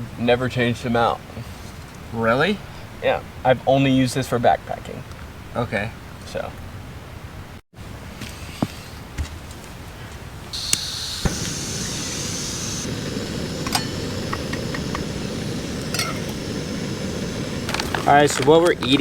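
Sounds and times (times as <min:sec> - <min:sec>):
camp stove burner rushing: 0:10.5 - 0:19.0.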